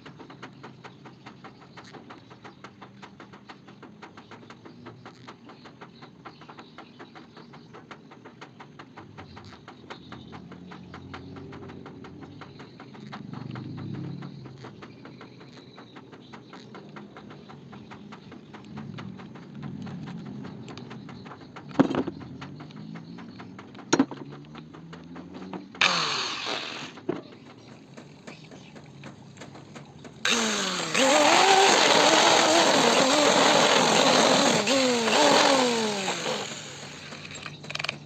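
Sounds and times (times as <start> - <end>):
light rapid ticking: 0.0 - 38.0
sharp clicks: 0.0 - 38.0
power tool whining: 25.8 - 27.0, 30.2 - 38.0.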